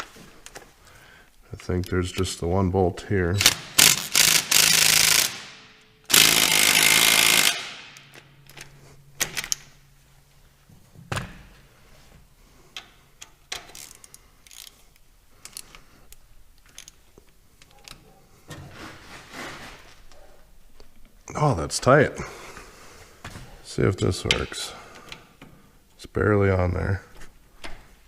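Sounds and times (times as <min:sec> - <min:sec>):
impact wrench running: 0:03.4 - 0:08.3.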